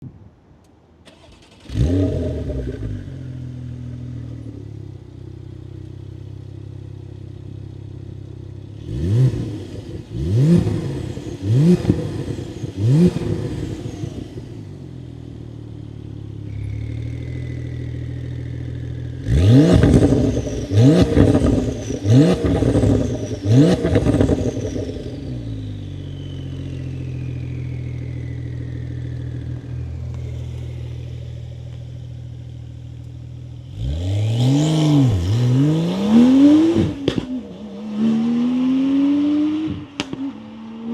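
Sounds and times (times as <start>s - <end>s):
car engine starting and idling: 0.6s - 38.0s
engine throttle blips: 9.3s - 38.6s.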